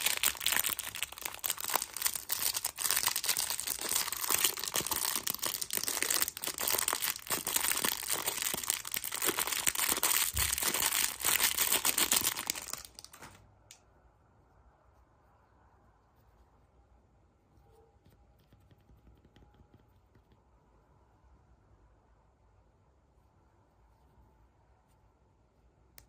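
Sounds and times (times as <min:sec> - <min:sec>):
wrapping crumpling and tearing: 0:00.0 - 0:13.4.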